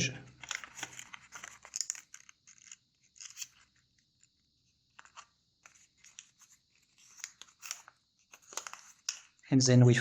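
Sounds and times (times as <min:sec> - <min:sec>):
paper crackling and rustling: 0:00.4 - 0:03.5, 0:05.0 - 0:09.2.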